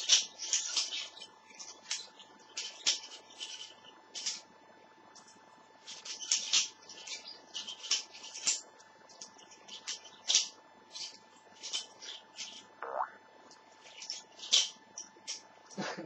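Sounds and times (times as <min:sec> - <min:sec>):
butterfly knife clicking and rattling: 0:00.0 - 0:04.4, 0:09.2 - 0:12.6, 0:13.8 - 0:15.5.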